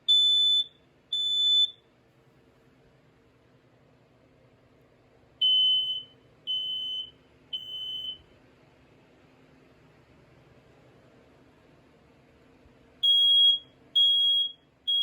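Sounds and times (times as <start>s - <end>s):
smoke alarm beeps: 0.0s - 1.8s, 5.4s - 8.3s, 13.0s - 15.0s.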